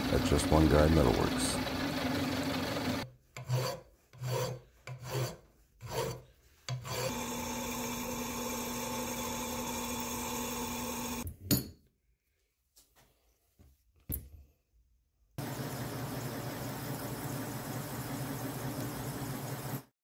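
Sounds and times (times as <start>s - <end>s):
shop machine humming: 0.0s - 3.1s, 6.9s - 11.2s, 15.4s - 19.9s
hand tool scraping on metal: 3.4s - 7.1s.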